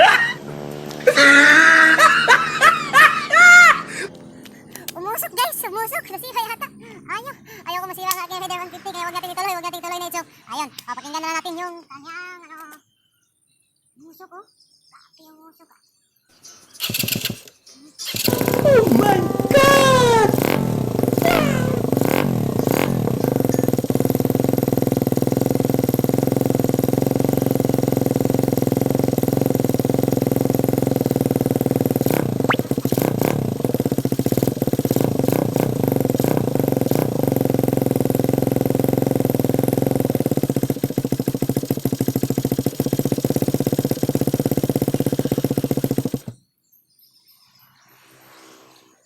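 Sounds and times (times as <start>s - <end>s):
motorcycle engine idling: 0.0s - 5.3s, 18.2s - 46.4s.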